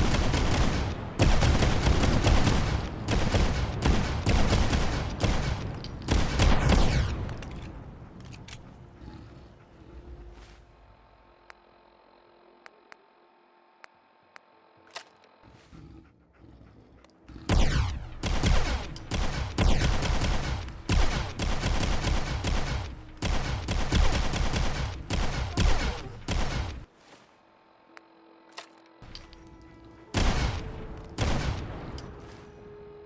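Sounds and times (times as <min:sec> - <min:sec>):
pistol shots echoing: 0:00.0 - 0:07.4, 0:17.5 - 0:26.9, 0:30.1 - 0:32.2.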